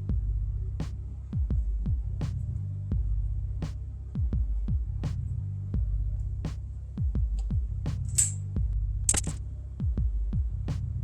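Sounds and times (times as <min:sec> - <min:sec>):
deep bass line: 0:00.0 - 0:11.0
punchy kick drums: 0:01.4 - 0:02.3, 0:04.2 - 0:05.1, 0:05.8 - 0:06.1, 0:07.0 - 0:10.8.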